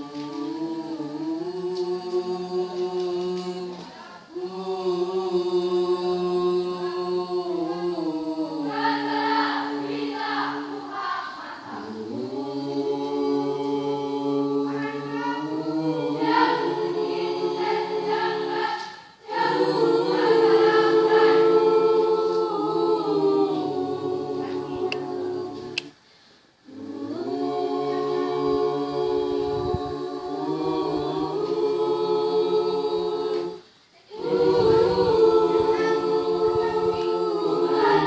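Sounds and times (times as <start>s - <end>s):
choir singing held chords: 0.0s - 38.0s.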